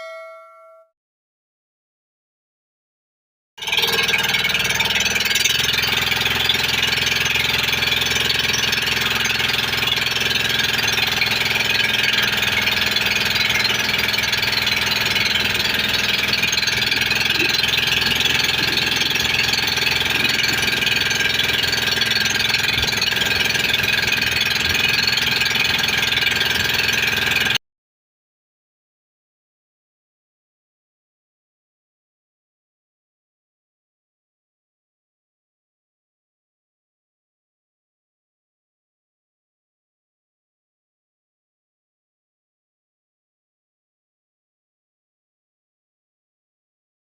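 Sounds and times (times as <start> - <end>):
boat engine chugging: 3.6 - 27.6.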